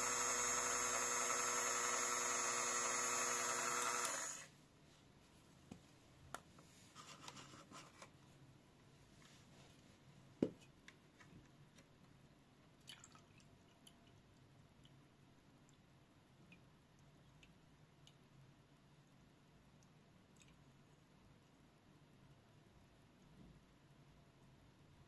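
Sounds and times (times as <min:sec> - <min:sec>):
faint clicks and taps: 0:10.4 - 0:12.8.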